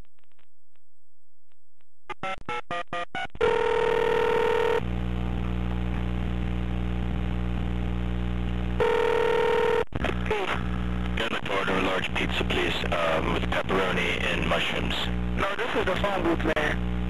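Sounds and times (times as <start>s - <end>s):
telephone ringing tone: 3.4s - 4.8s, 8.8s - 9.9s
low line hum: 4.8s - 8.8s, 10.0s - 17.0s.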